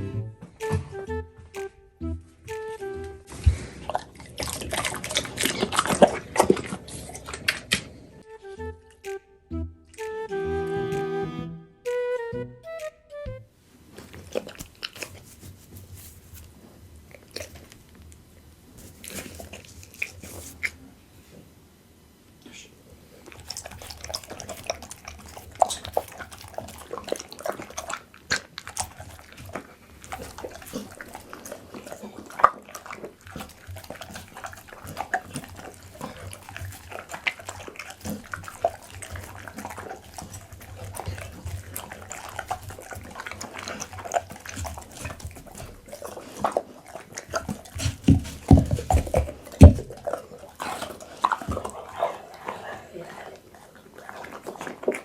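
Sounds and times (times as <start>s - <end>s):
dog chewing raw meat: 2.4s - 8.2s, 14.0s - 18.1s, 18.8s - 20.8s, 23.2s - 55.0s.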